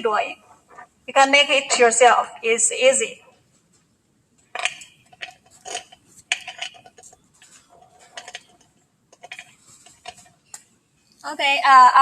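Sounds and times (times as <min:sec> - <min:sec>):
metal pieces clinking: 0:04.5 - 0:10.3.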